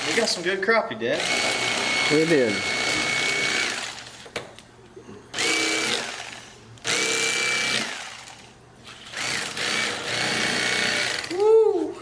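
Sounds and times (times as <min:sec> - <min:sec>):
electric knife motor whine: 0:01.2 - 0:04.2.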